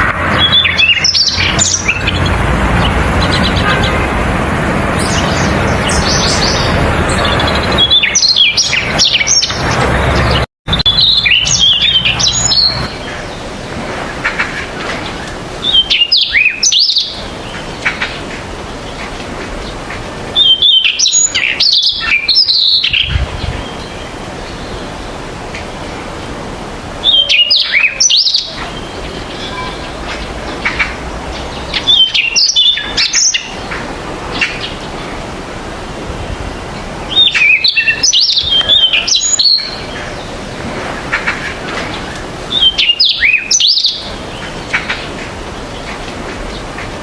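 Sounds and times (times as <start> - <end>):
bird singing whistled phrases: 10.7 - 12.9, 37.1 - 39.8.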